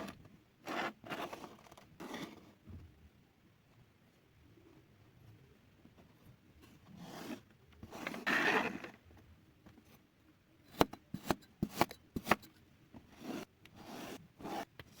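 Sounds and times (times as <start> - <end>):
sand scraping: 7.0 - 8.9.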